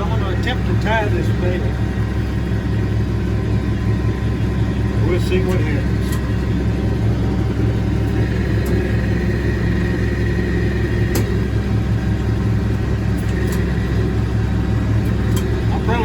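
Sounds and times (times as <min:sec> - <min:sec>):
tractor engine running: 0:00.0 - 0:16.0
light machinery clicks: 0:05.5 - 0:06.4, 0:11.0 - 0:11.5, 0:12.1 - 0:14.1, 0:14.9 - 0:15.7.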